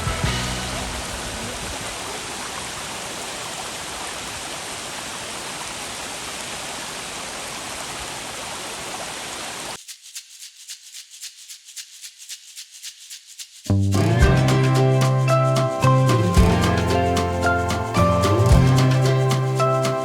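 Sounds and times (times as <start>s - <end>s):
stream water rushing: 0.0s - 9.8s, 16.1s - 20.0s.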